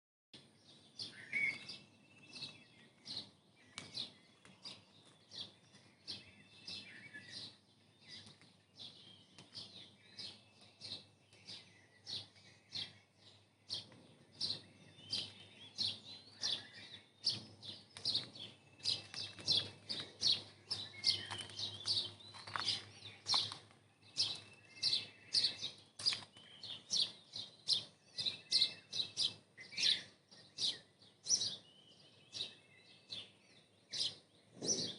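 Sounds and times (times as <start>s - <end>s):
small birds chirping: 0.4s - 34.9s
bird whistled call: 1.1s - 1.8s.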